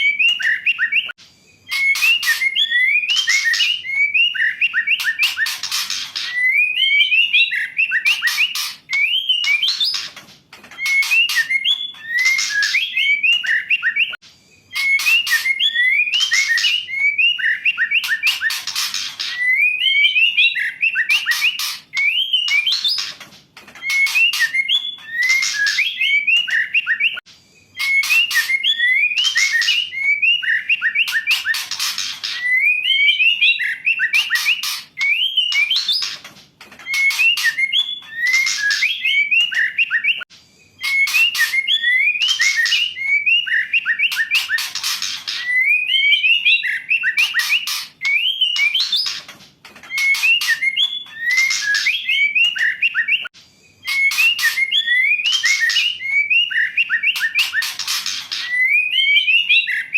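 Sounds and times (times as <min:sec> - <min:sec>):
bird harsh rasping chatter: 0:05.0 - 0:06.5, 0:08.1 - 0:12.9, 0:18.1 - 0:19.5, 0:21.2 - 0:26.6, 0:31.0 - 0:32.6, 0:34.1 - 0:39.7, 0:44.1 - 0:45.6, 0:47.2 - 0:52.8, 0:57.1 - 0:58.7.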